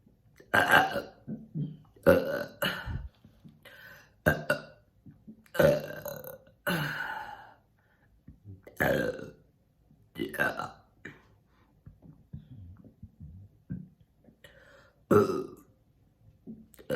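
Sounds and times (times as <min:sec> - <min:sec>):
woman burping: 0:00.5 - 0:03.1, 0:04.2 - 0:04.8, 0:05.5 - 0:07.4, 0:08.7 - 0:09.3, 0:15.1 - 0:15.7.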